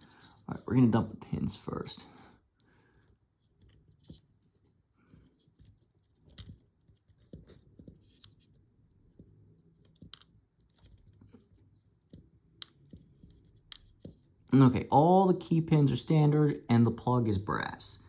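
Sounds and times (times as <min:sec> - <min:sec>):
lock pins clicking and tapping: 0:05.6 - 0:14.5.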